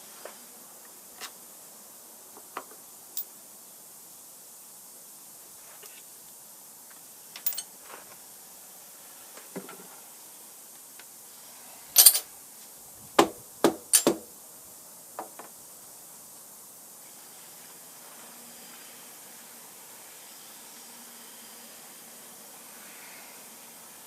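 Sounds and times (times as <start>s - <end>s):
metal tools clicking and clanking: 7.4s - 7.7s, 12.0s - 12.2s, 13.9s - 14.1s
sharp knocks on metal: 13.2s - 14.3s.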